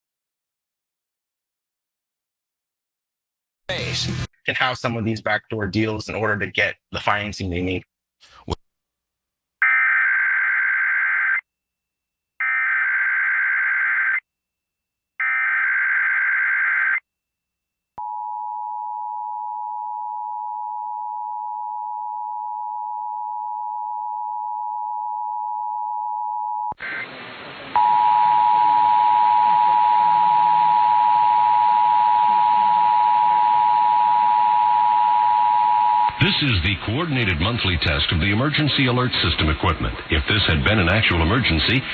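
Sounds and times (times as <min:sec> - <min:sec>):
static hiss: 0:26.8 - 0:27.8.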